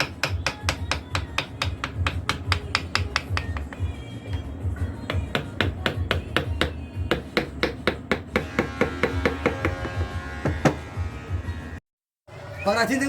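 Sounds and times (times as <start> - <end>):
hammer tapping: 0.0 - 4.4, 5.0 - 10.8.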